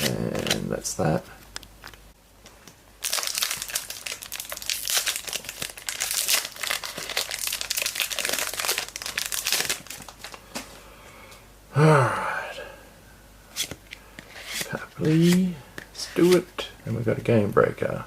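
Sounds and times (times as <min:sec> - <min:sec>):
wrapper crinkling: 0:03.0 - 0:10.4.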